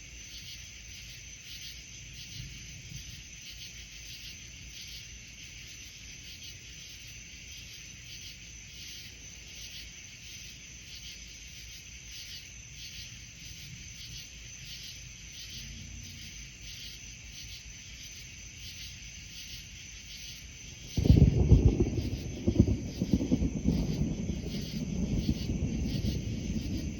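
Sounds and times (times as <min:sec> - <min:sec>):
crickets chirping: 0:00.0 - 0:26.9
thunder crack and rumble: 0:20.8 - 0:26.9.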